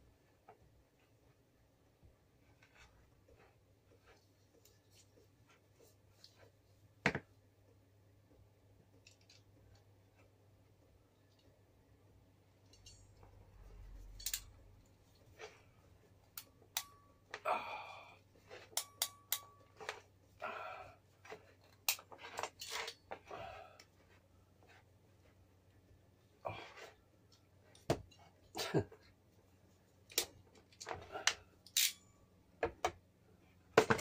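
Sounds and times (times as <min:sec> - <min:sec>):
hand tool clicks and taps: 0:16.4 - 0:17.1, 0:18.8 - 0:19.6.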